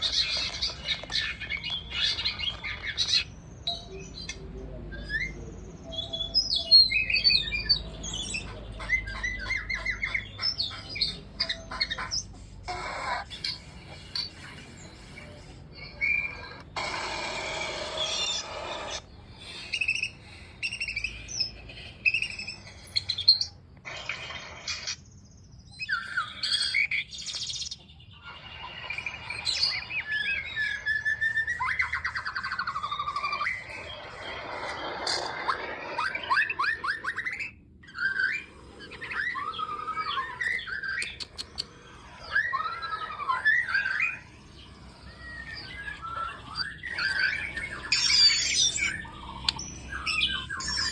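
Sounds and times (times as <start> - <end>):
songbird singing: 0.0 - 12.0, 36.2 - 50.9.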